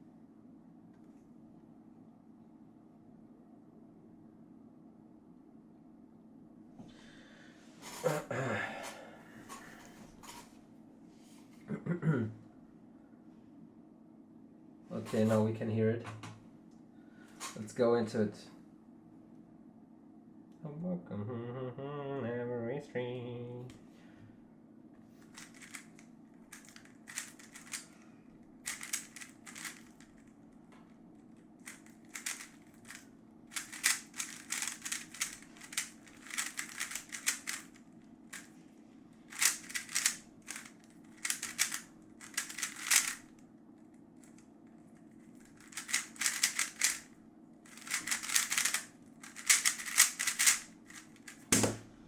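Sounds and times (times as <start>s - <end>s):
puzzle cube plastic clicking: 25.3s - 27.9s, 28.6s - 30.3s, 31.6s - 38.5s, 39.3s - 43.3s, 45.4s - 47.1s, 47.7s - 51.4s.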